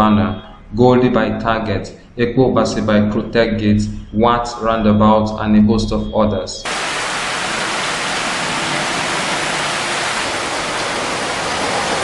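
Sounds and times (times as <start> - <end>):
rushing water: 6.7 - 12.0.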